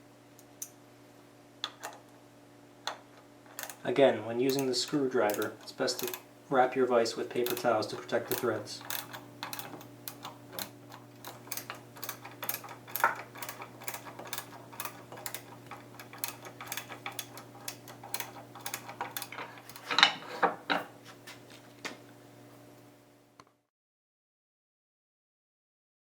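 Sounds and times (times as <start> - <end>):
faint steady hum: 0.0 - 23.5
screwdriver clicking: 4.5 - 6.2, 7.3 - 19.8.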